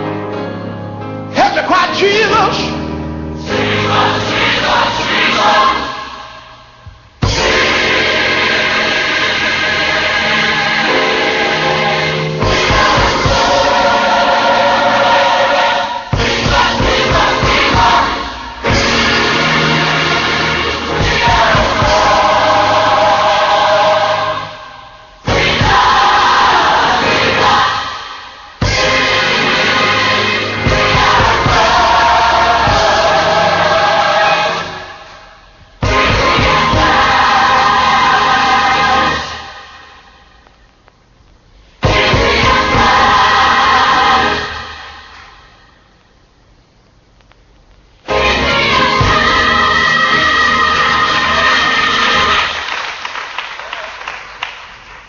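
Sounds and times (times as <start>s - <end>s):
gospel band accompaniment: 0.0s - 39.9s, 41.8s - 45.4s, 48.1s - 53.0s
choir singing sustained notes: 3.3s - 40.4s, 41.8s - 45.9s, 48.1s - 52.9s
bass and drum beat: 16.1s - 19.6s, 25.3s - 26.2s.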